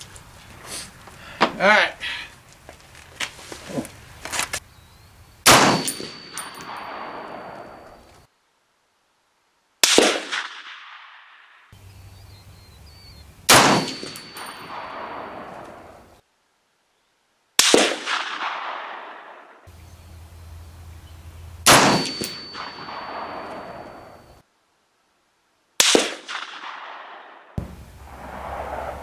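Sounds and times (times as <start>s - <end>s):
rifle shots with echo: 5.4s - 8.2s, 9.8s - 11.2s, 13.5s - 16.2s, 17.6s - 24.4s, 25.8s - 29.0s.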